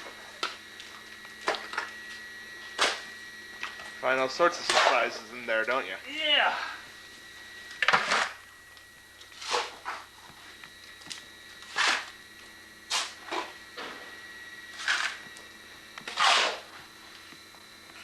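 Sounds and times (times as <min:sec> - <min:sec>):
shovel scraping wet mud: 0:09.4 - 0:09.8, 0:11.7 - 0:12.1, 0:12.9 - 0:13.4, 0:14.8 - 0:15.2, 0:16.1 - 0:16.7.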